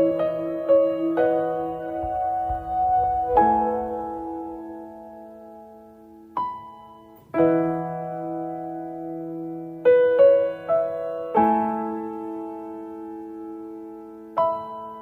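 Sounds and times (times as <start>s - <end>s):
soft piano music: 0.0s - 15.0s.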